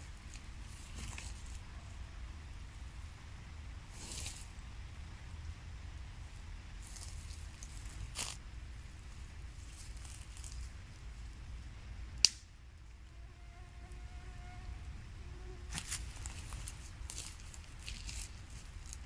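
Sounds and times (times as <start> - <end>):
low steady rumble: 0.0 - 19.0
faint buzzing tone: 9.8 - 19.0
campfire pop: 12.2 - 12.5
faint fire crackles: 15.7 - 19.0.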